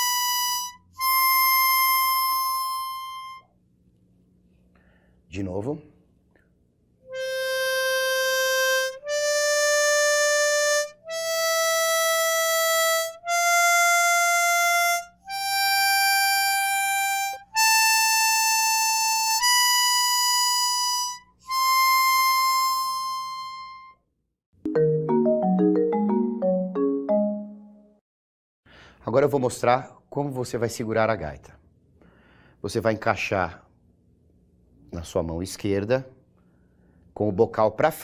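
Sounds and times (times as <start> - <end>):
harmonica playing a scale: 0.0 - 3.6, 7.0 - 24.0.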